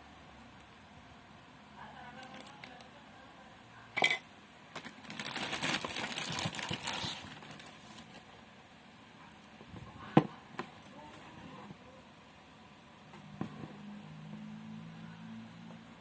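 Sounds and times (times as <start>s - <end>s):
packaging rustling and scraping: 4.8s - 8.3s.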